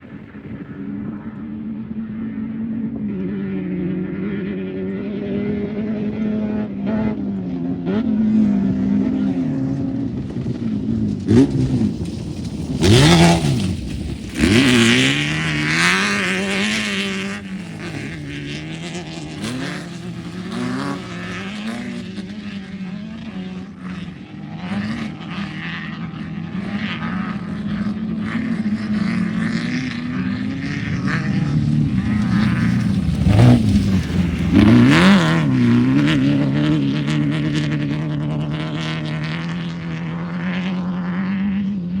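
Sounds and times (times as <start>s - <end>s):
race car engines droning: 0.0s - 42.0s.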